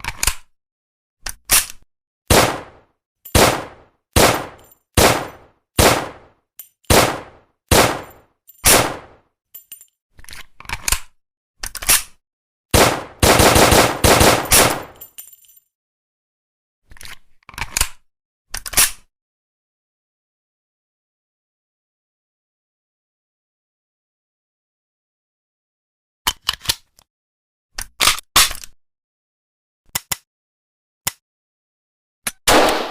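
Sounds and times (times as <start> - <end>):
rapid string of gunshots: 2.3 - 2.8, 3.4 - 6.3, 6.9 - 9.2, 12.8 - 15.0, 32.5 - 32.9
pistol shots: 2.3 - 6.3, 6.9 - 9.2, 12.8 - 15.0, 32.5 - 32.9.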